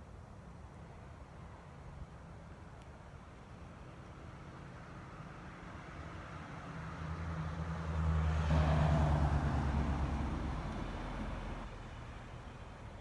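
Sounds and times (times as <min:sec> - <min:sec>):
car driving past: 0:06.3 - 0:12.4.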